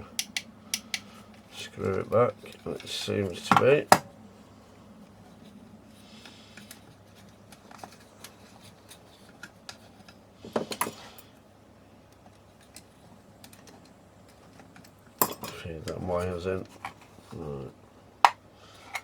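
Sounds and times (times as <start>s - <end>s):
parts clattering: 6.2s - 11.4s, 12.2s - 17.5s, 18.2s - 19.0s.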